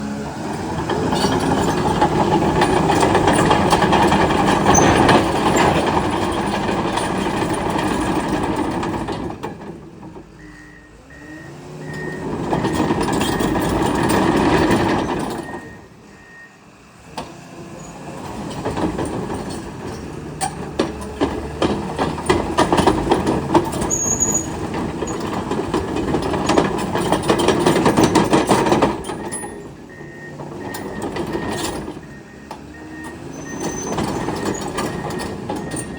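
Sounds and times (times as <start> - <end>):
bulldozer diesel engine: 0.0 - 35.9
metal clanks: 0.5 - 10.4, 18.3 - 35.9
reversing alarm beeps: 10.4 - 13.8, 15.4 - 16.6, 29.2 - 35.9.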